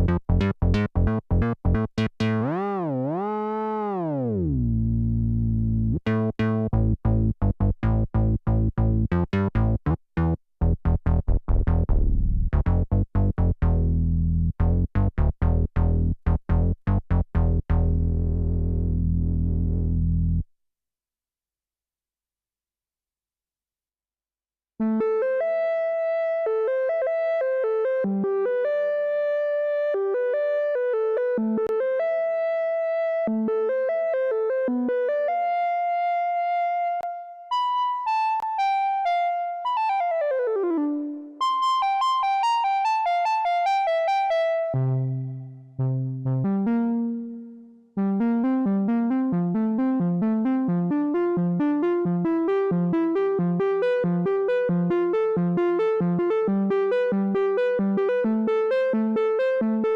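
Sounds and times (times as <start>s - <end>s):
synthesizer melody: 0.0s - 7.0s, 24.8s - 59.9s
deep synthesizer bass notes: 0.0s - 20.5s, 44.1s - 59.9s
fast synthesizer arpeggio: 48.0s - 59.9s.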